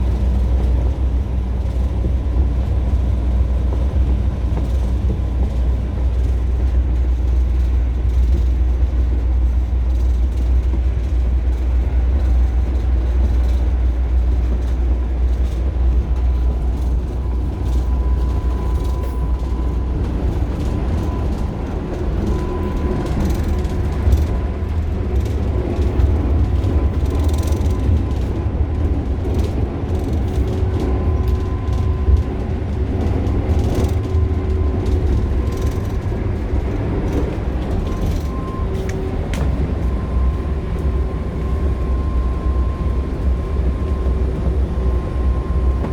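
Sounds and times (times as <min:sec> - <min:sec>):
engine low rumble: 0:00.0 - 0:45.9.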